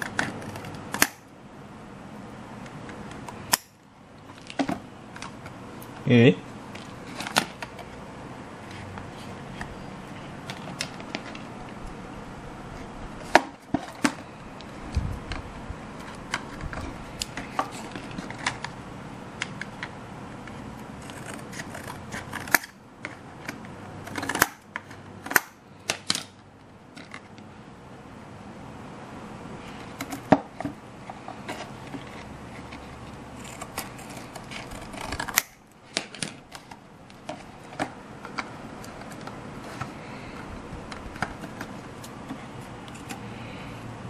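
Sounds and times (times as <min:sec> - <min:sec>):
scissors cutting: 0:21.0 - 0:22.8, 0:32.0 - 0:36.1.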